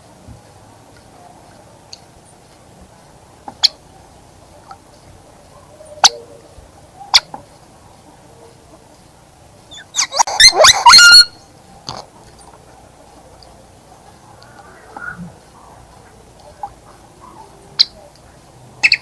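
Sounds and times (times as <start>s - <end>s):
birds calling: 3.5s - 19.0s
harsh chattering bird calls: 9.7s - 11.5s, 12.3s - 19.0s.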